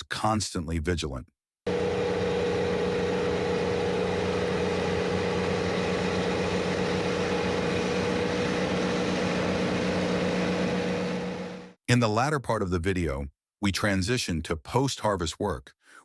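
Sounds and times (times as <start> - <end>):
heavy machinery engine humming: 1.7 - 11.8.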